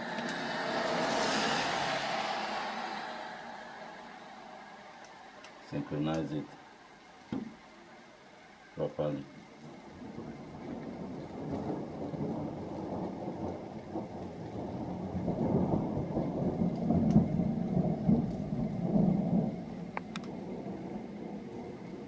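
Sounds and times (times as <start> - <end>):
thunder rumbling: 0.0 - 6.4, 9.3 - 22.0.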